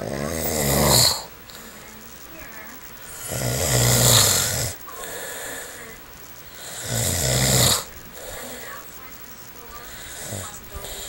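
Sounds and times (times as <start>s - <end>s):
man snoring: 0.0s - 1.8s, 3.0s - 5.9s, 6.5s - 8.6s, 9.8s - 11.0s
quiet breath: 1.1s - 3.4s, 4.2s - 7.0s, 7.6s - 11.0s.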